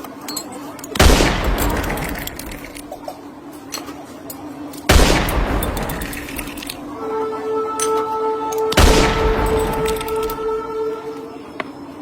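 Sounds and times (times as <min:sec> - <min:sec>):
low hum: 0:01.0 - 0:03.0, 0:04.8 - 0:12.0
loud blast sound effects: 0:08.8 - 0:10.6.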